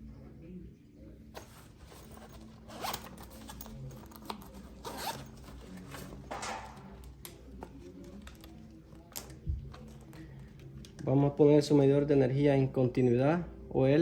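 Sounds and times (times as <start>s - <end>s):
rasping zips and scrapes: 1.4s - 6.1s.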